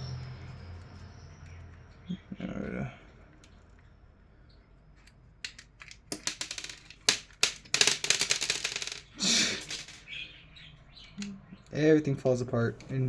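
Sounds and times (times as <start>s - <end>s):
fan parts clicking and rattling: 5.0s - 10.2s.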